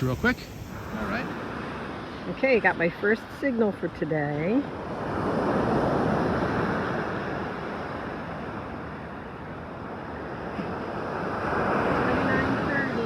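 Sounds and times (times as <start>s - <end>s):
ocean surf washing up: 0.0s - 13.0s.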